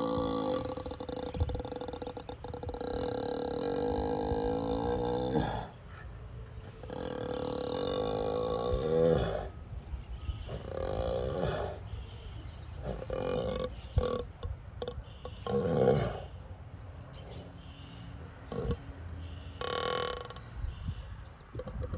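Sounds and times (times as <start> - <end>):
bull snoring: 0.0 - 5.8, 6.8 - 9.6, 10.5 - 11.8, 12.7 - 16.3, 18.5 - 18.8.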